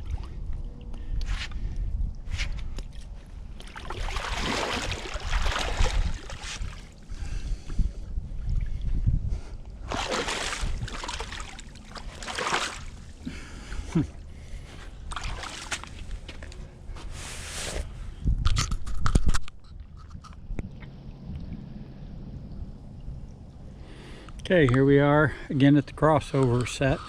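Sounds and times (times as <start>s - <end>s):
water sloshing from paddle strokes: 2.8s - 7.7s, 9.7s - 13.7s, 14.4s - 17.6s.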